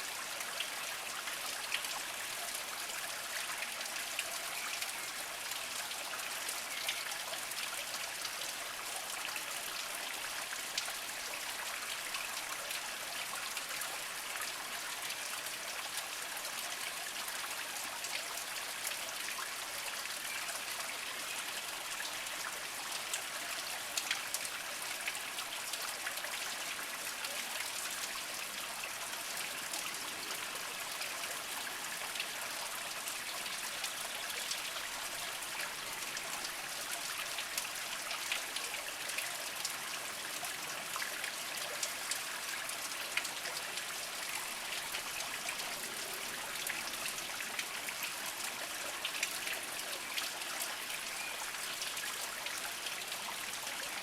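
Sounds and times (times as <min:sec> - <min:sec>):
spring water trickling over rocks: 0:00.0 - 0:54.0.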